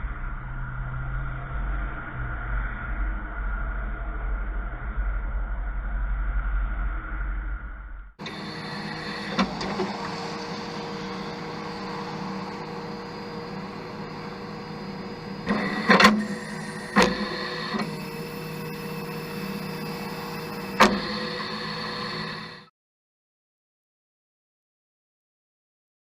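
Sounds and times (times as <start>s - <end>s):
motor whirring: 8.2s - 22.7s.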